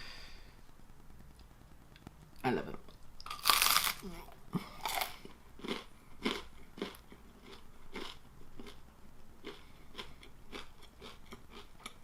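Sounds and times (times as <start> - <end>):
crunchy chewing: 3.2 - 8.8, 9.4 - 12.0.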